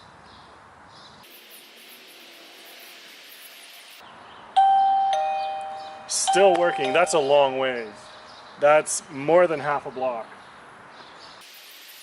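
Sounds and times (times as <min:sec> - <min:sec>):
two-note doorbell chime: 0:04.6 - 0:08.1.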